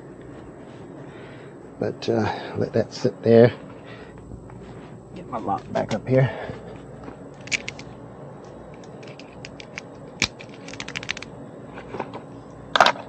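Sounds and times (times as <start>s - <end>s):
rapid clicks: 8.8s - 11.3s.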